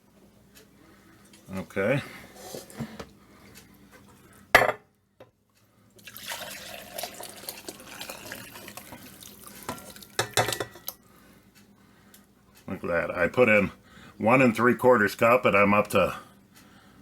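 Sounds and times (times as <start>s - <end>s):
liquid pouring into cup: 6.0s - 11.0s.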